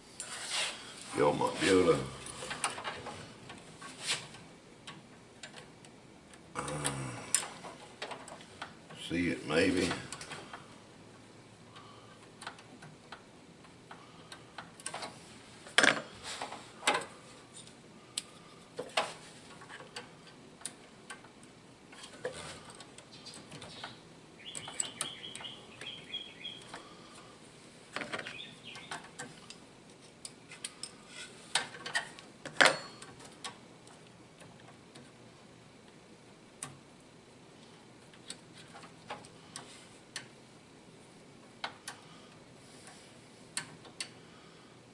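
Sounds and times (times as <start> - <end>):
high metal scrape: 0.2 - 1.0.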